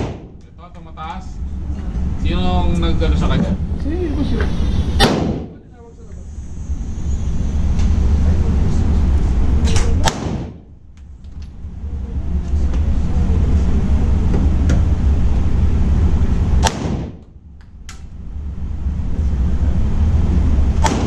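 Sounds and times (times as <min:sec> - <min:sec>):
pistol shots: 0:00.0 - 0:00.4, 0:05.0 - 0:05.6, 0:10.0 - 0:10.6, 0:16.6 - 0:17.2, 0:20.8 - 0:21.0
steady low rumble: 0:00.0 - 0:21.0.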